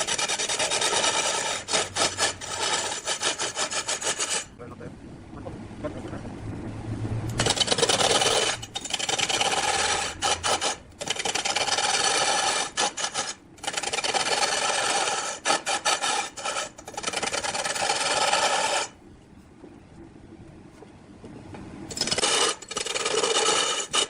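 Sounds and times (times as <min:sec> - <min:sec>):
lathe tool shaving spinning wood: 0:00.0 - 0:04.5, 0:07.4 - 0:19.0, 0:21.9 - 0:24.0.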